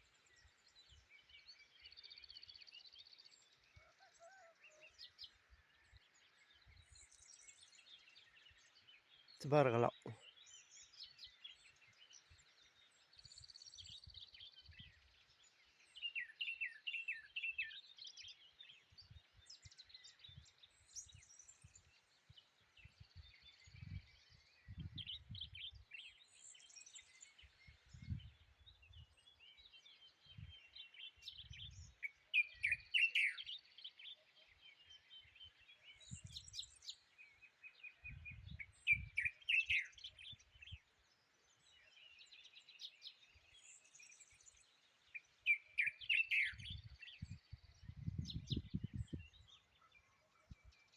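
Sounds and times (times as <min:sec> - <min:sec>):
songbird singing falling notes: 0:45.1 - 0:49.6.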